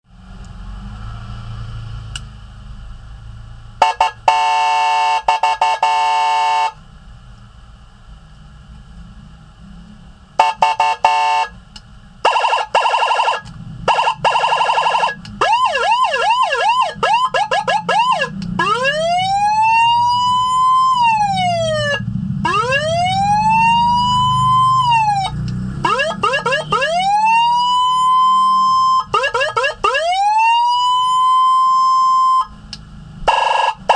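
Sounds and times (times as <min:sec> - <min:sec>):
low hum: 0:00.0 - 0:33.9
electronic siren switching tones: 0:03.8 - 0:06.8, 0:10.4 - 0:33.9.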